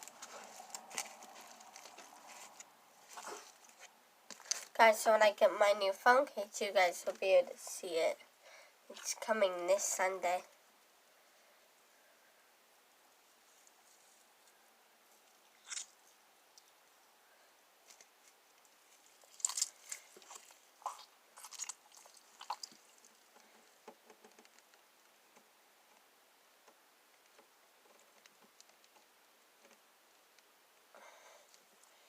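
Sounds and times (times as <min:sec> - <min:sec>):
slime squelching and crackling: 0:00.0 - 0:04.8, 0:17.9 - 0:23.5.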